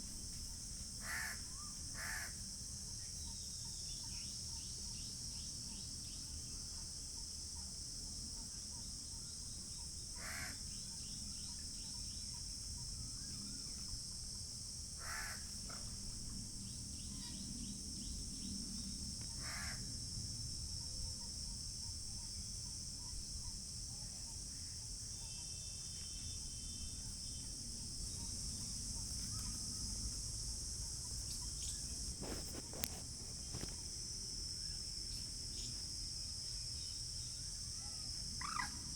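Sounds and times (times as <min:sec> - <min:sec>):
insects chirring: 0:00.0 - 0:38.9
crow cawing: 0:01.0 - 0:01.4, 0:02.0 - 0:02.4, 0:10.2 - 0:10.6, 0:15.0 - 0:15.5, 0:19.4 - 0:19.8.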